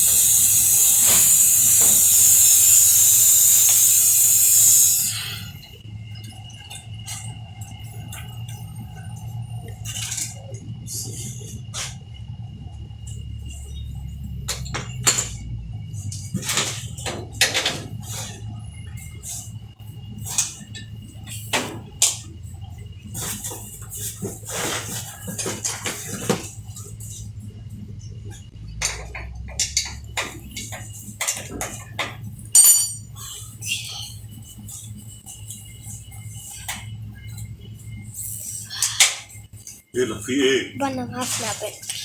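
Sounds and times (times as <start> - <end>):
steady low hum: 0.0 - 42.0
metal tools knocking and clinking: 32.5 - 33.1
sharp ringing metallic clink: 32.6 - 33.1.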